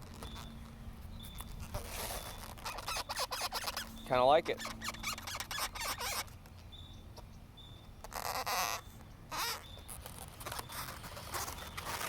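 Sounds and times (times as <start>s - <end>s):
faint high squeaks: 0.0s - 6.4s, 8.0s - 12.0s
balloons rubbing and rustling: 1.5s - 6.3s, 9.4s - 12.0s.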